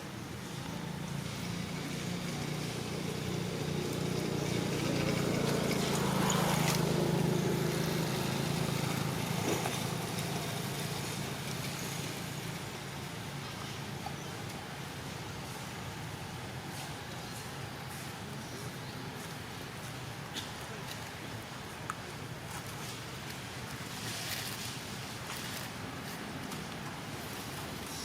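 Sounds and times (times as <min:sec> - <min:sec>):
motor engine passing by: 0:00.9 - 0:13.2.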